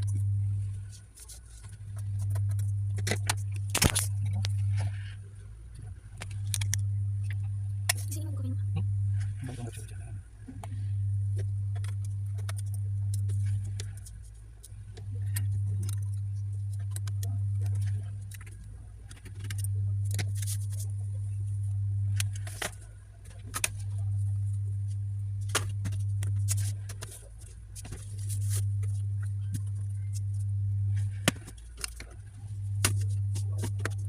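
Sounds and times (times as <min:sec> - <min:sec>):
low hum: 0:00.0 - 0:34.0
small parts clicking and tapping: 0:06.2 - 0:08.2, 0:11.4 - 0:20.8.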